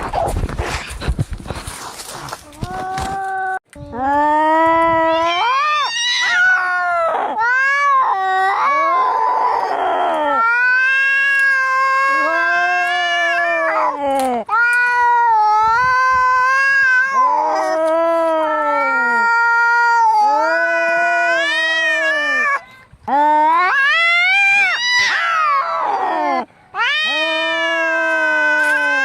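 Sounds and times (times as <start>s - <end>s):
cats yowling: 5.0s - 22.6s, 23.4s - 29.0s.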